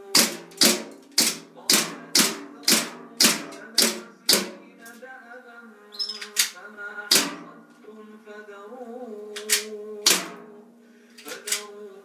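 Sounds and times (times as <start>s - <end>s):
bb pistol shots: 0.1s - 4.7s, 6.2s - 7.6s, 9.4s - 10.5s.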